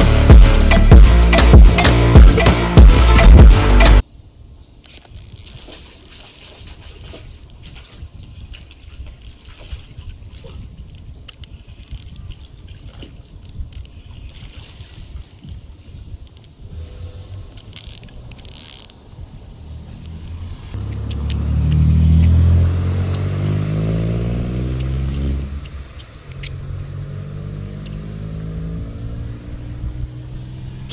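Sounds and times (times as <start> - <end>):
low engine hum: 19.2 - 30.9
passing engine: 19.5 - 30.9.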